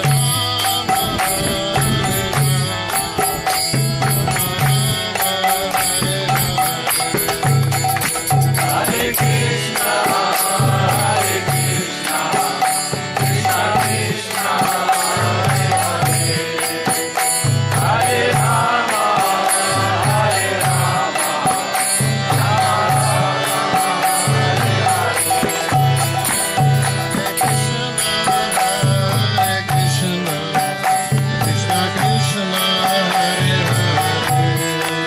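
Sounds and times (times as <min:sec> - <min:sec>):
drum beating steady rhythm: 0:00.0 - 0:35.0
harmonium drone: 0:00.0 - 0:35.0
voices chanting: 0:00.0 - 0:35.0.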